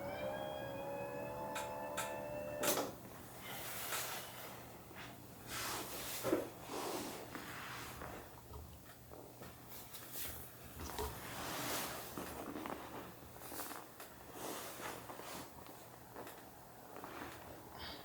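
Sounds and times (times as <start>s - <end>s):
soft rustling: 9.5s - 18.0s.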